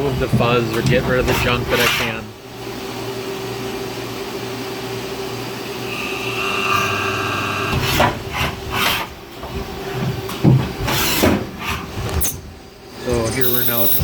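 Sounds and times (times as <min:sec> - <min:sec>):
machine hum: 0:00.0 - 0:07.8
high tool whine: 0:05.6 - 0:07.8.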